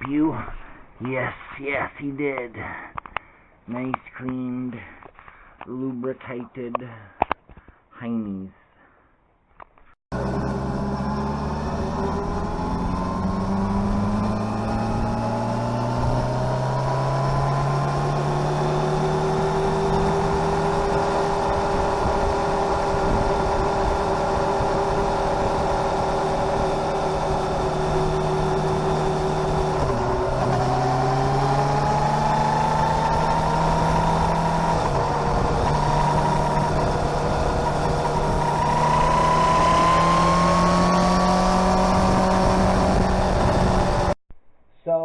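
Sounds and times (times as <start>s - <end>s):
three-wheeler engine running: 10.1s - 44.2s.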